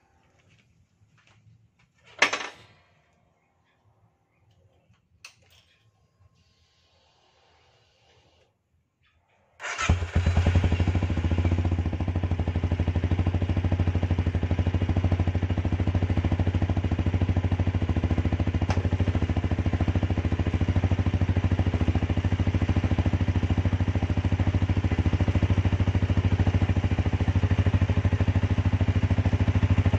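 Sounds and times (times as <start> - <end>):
motorcycle engine idling: 9.6 - 29.9.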